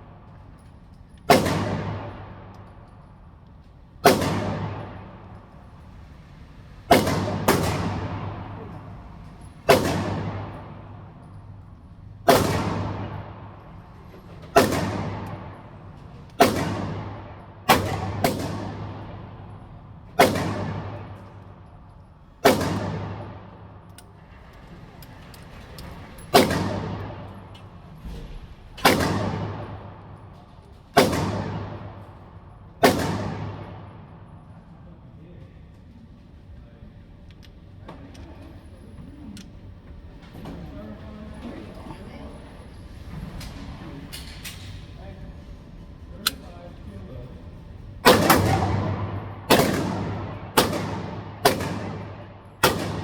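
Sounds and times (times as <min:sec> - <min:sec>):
steady low hum: 0:00.0 - 0:53.0
sharp echoing bangs: 0:01.3 - 0:02.6, 0:04.0 - 0:05.4, 0:06.9 - 0:08.9, 0:09.6 - 0:11.5, 0:12.2 - 0:21.6, 0:22.4 - 0:23.9, 0:26.3 - 0:27.5, 0:28.1 - 0:34.4, 0:48.0 - 0:53.0.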